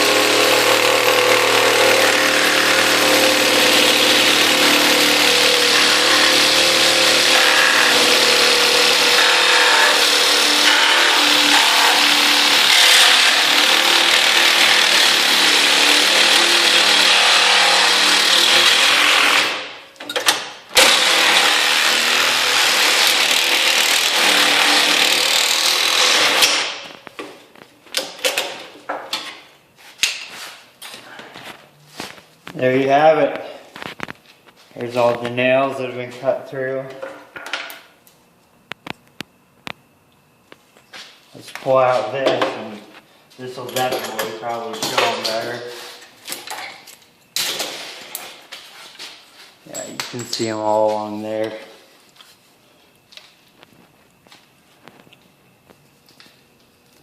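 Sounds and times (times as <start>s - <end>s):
reciprocating saw cutting wood: 0.0s - 19.7s.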